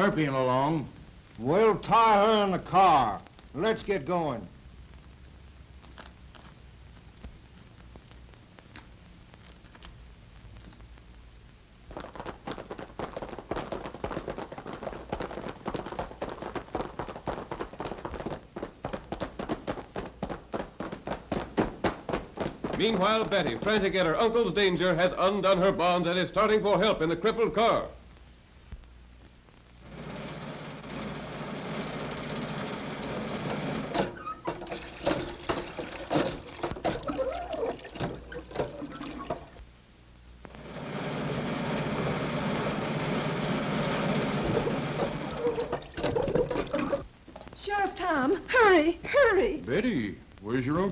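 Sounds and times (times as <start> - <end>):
galloping hoofbeats: 11.9 - 25.2
sharp knocks and clatters: 33.9 - 37.2.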